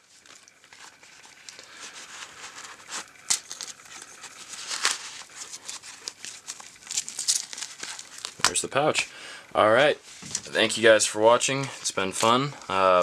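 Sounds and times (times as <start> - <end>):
packaging crinkling and rustling: 0.0 - 9.1.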